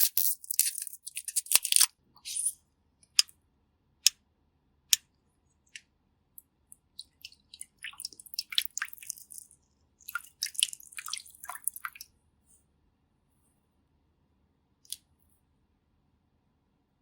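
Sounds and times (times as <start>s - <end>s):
crackly squishy makeup sounds: 0.0s - 3.2s, 5.0s - 12.1s.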